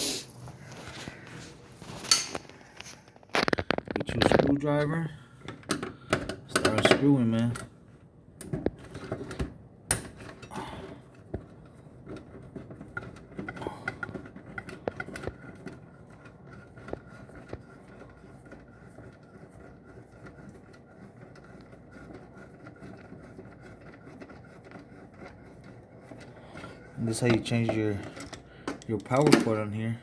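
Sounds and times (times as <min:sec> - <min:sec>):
small metal clicks and scrapes: 0:11.6 - 0:29.6.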